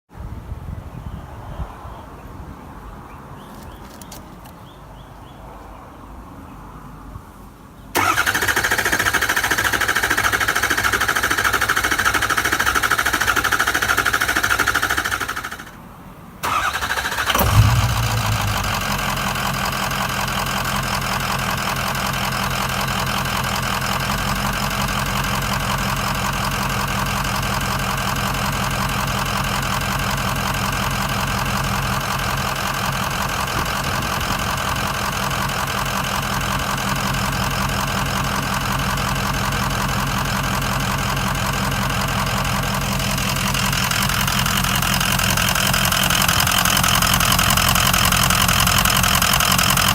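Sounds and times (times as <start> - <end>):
diesel engine cranking and starting: 8.0 - 49.9
rough loping engine idle: 8.0 - 49.9
steady whine: 17.3 - 20.2.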